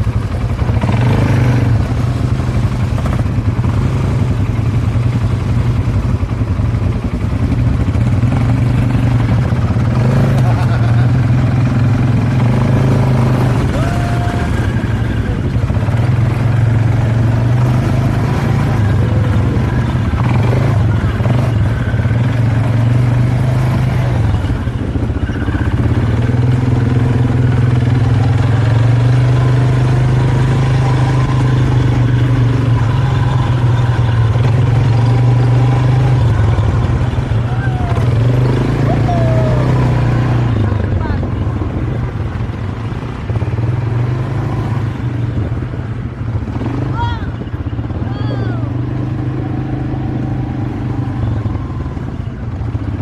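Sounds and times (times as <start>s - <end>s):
vehicle engine running: 0.0s - 53.0s
faint voices: 18.7s - 21.2s, 37.2s - 41.6s, 46.9s - 48.9s.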